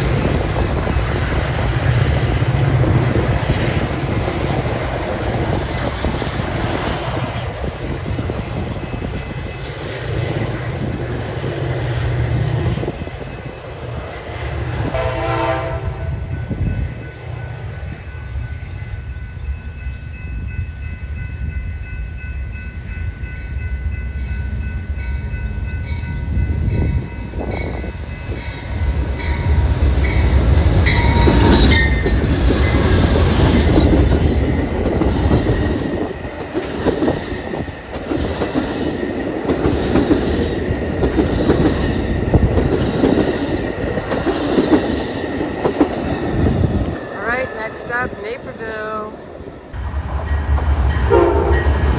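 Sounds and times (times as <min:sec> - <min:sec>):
train wheels rumbling on rails: 0:00.0 - 0:51.9
train horn blast: 0:14.9 - 0:16.5, 0:50.9 - 0:51.9.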